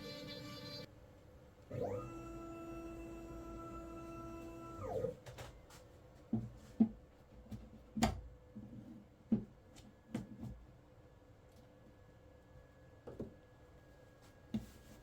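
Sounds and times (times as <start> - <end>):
background music: 0.0 - 0.9.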